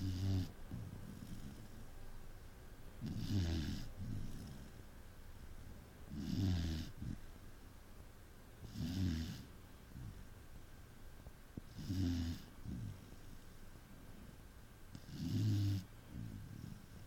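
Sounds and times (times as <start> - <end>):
dog snoring: 0.0 - 1.9, 3.0 - 4.8, 6.1 - 7.2, 8.6 - 10.2, 11.7 - 13.4, 14.2 - 17.0.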